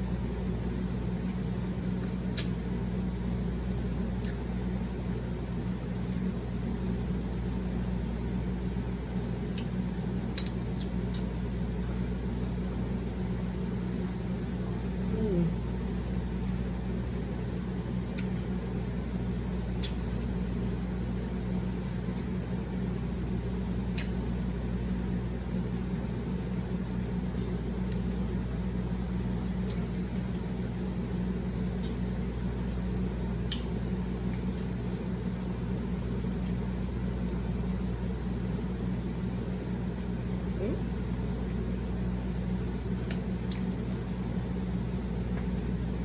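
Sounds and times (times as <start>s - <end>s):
low mechanical hum: 0.0s - 46.0s
chewing clicks and mouth sounds: 2.3s - 3.0s, 3.9s - 4.5s, 9.2s - 12.6s, 17.9s - 18.4s, 19.5s - 20.7s, 23.9s - 24.2s, 27.3s - 28.4s, 29.6s - 30.6s, 31.5s - 37.7s, 40.7s - 44.3s.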